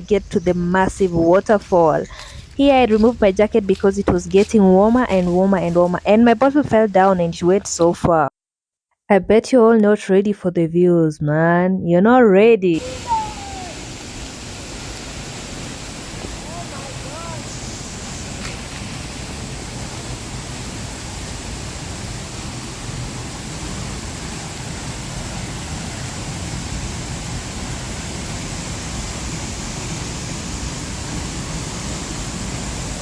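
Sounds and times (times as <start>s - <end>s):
waterfall roar: 12.8s - 33.0s.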